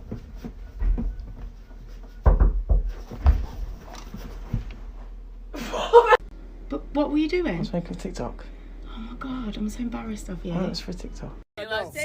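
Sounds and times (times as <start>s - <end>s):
dull knocks and thumps: 0.0s - 4.8s
low steady hum: 0.0s - 11.5s.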